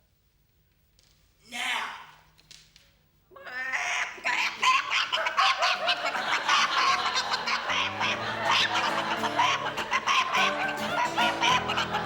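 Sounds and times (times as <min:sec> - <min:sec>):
snickering laughter: 0:03.5 - 0:12.0.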